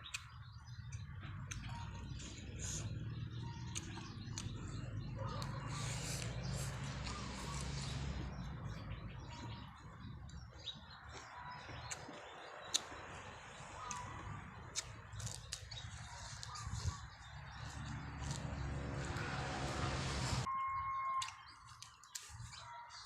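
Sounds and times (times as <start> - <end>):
faint bird chirps: 20.5 - 23.0.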